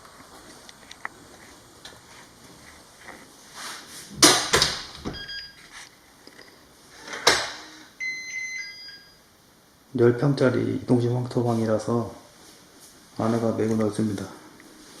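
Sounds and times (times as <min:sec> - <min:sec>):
door banging shut: 0:04.2 - 0:05.2.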